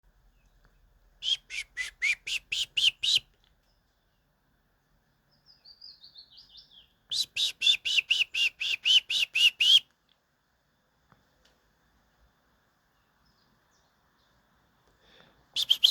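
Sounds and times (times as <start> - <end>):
loud rapid chirping calls: 1.2 - 3.2, 15.6 - 15.9.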